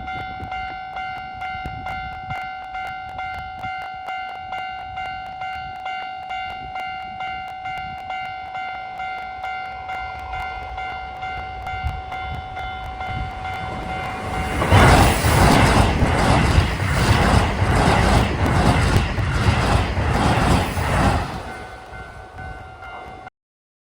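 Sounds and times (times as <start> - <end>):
approaching train rushing: 0.0 - 23.3
level crossing warning bell: 21.4 - 23.3.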